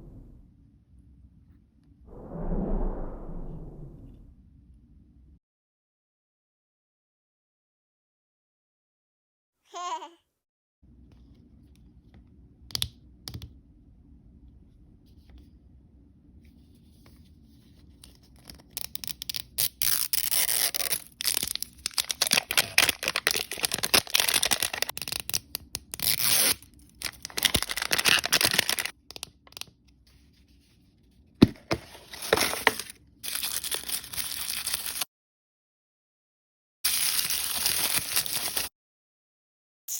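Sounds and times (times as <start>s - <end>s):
packaging ripping and rustling: 19.8s - 29.0s, 31.4s - 35.0s, 36.9s - 38.7s.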